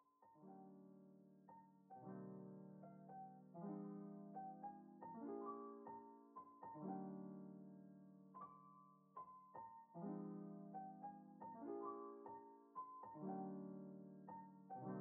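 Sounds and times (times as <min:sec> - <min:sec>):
soft piano music: 0:00.0 - 0:15.0.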